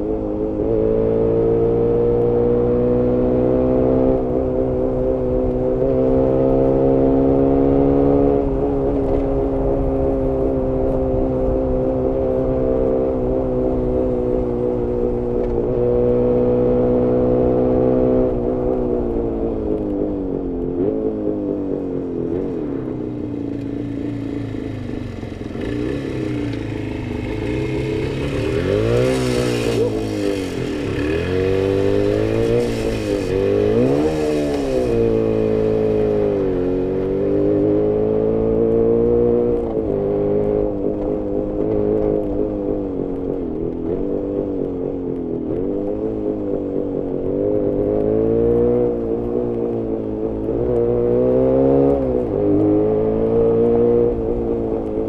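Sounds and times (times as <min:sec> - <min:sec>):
two-stroke motorcycle engine revving: 0:23.5 - 0:42.6.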